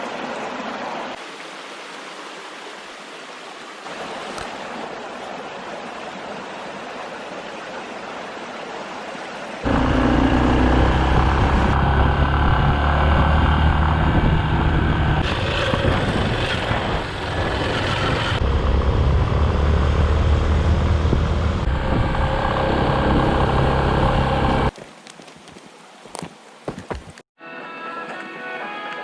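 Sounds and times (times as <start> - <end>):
motorcycle engine running: 9.6 - 24.7.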